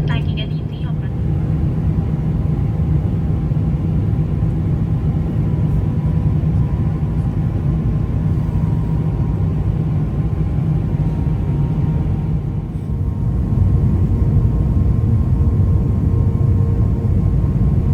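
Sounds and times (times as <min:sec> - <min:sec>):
faint steady hums: 0:00.0 - 0:02.2
aircraft cabin rumble: 0:00.0 - 0:17.9.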